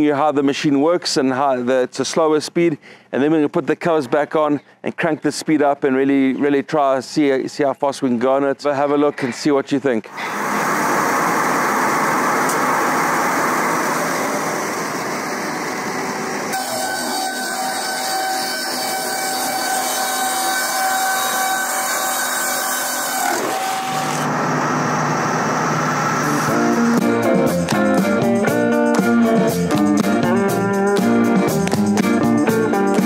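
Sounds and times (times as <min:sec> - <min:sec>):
steady machine whine: 0:10.1 - 0:28.7
rip saws cutting boards: 0:16.5 - 0:24.4.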